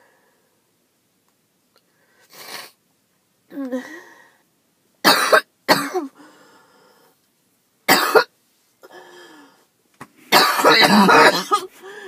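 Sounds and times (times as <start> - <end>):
woman coughing: 5.1 - 6.2, 7.9 - 8.3, 10.3 - 11.7.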